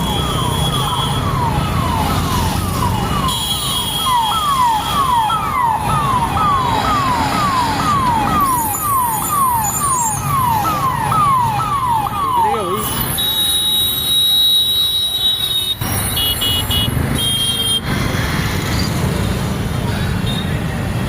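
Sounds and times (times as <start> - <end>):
electronic siren wailing: 0.0 - 14.2
vehicle engines rumbling: 0.0 - 21.0.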